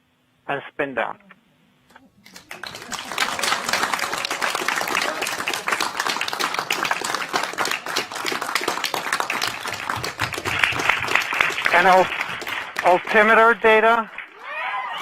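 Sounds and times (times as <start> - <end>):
crowd applauding: 2.2 - 15.0.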